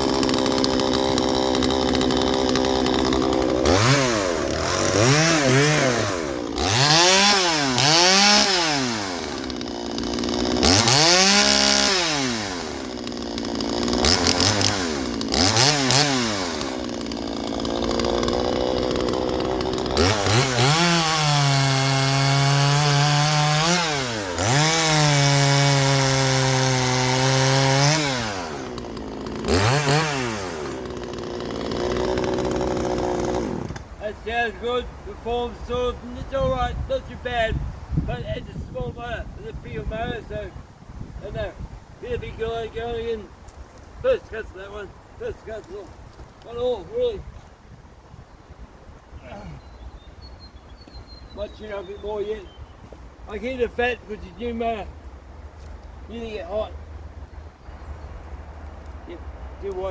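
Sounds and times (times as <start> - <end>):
chainsaw idling and revving: 0.0 - 36.9.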